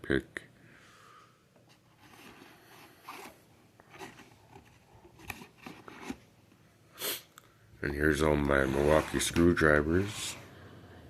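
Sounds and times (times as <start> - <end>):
scraping and rustling: 1.7 - 6.3, 8.3 - 10.4.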